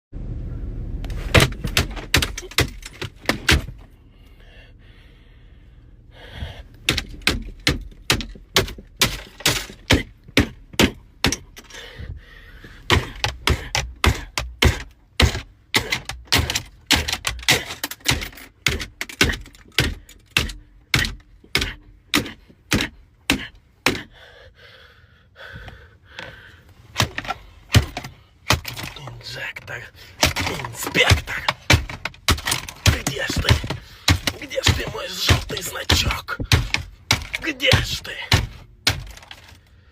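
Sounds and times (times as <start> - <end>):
hard hammer blows: 12.8 - 24.2, 30.2 - 39.5.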